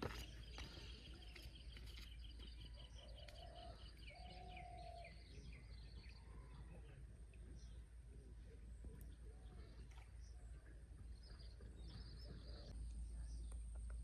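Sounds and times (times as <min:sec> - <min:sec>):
bird chirping: 0:00.0 - 0:07.8.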